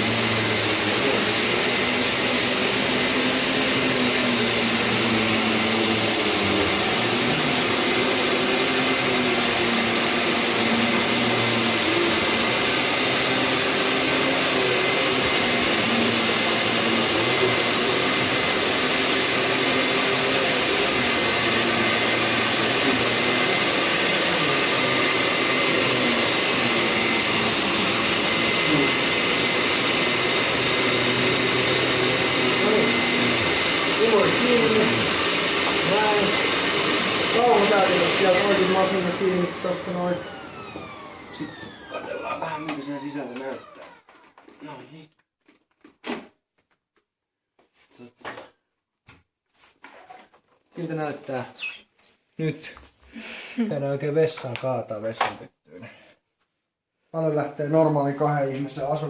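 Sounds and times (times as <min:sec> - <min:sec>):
vacuum cleaner running: 0:00.0 - 0:44.8.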